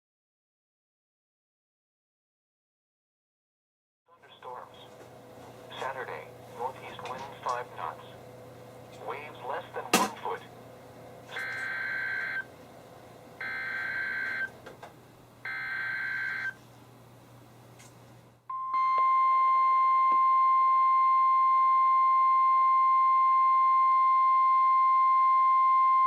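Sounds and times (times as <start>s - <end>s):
steady warning alarm tone: 11.3s - 12.5s, 13.4s - 14.6s, 15.4s - 16.6s, 18.5s - 26.0s
harsh electronic data bursts: 11.4s - 12.5s, 13.4s - 14.5s.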